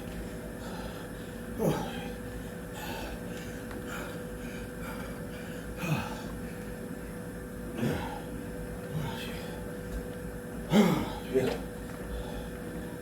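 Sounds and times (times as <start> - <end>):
steady hum: 0.0 - 13.0
man breathing hard: 0.6 - 6.6, 12.1 - 12.6
man groaning exhales: 10.7 - 11.6.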